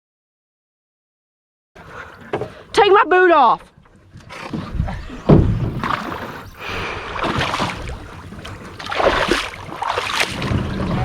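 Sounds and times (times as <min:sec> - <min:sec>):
pond water splashing: 0:03.8 - 0:11.0.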